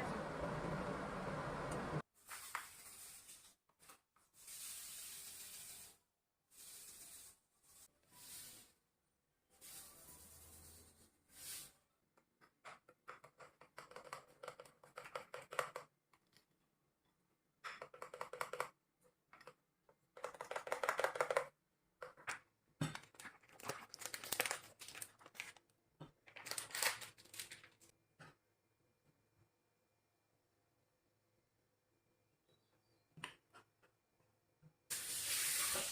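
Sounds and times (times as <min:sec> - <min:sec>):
crinkling and rustling: 0:22.0 - 0:28.0.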